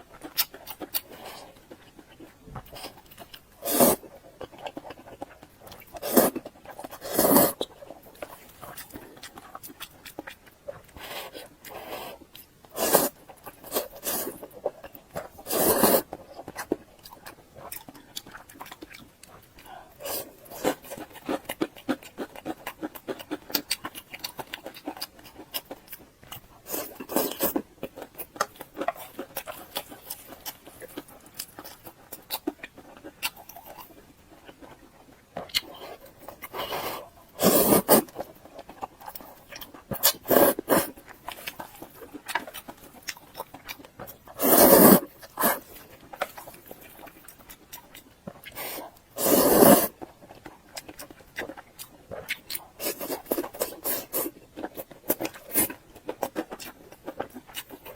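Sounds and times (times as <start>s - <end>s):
wet chewing and lip smacking: 0.0s - 57.9s.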